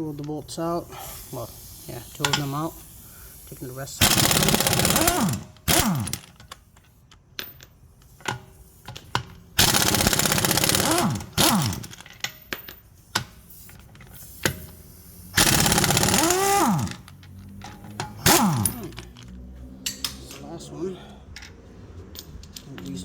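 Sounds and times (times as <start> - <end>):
bolts clicking and knocking: 0.0 - 0.6, 3.6 - 14.8, 15.4 - 20.6, 21.3 - 23.0
impact wrench hammering: 4.0 - 6.4, 9.6 - 12.6, 15.4 - 19.1.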